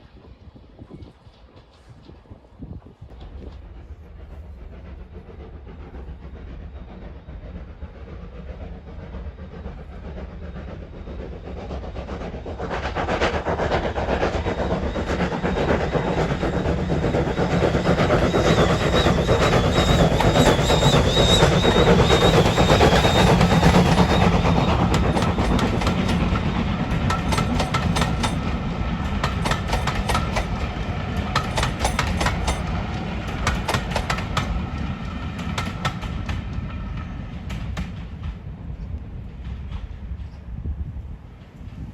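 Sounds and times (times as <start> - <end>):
steam train running past: 0.0 - 41.9
wheels clattering over rail joints: 18.2 - 34.8.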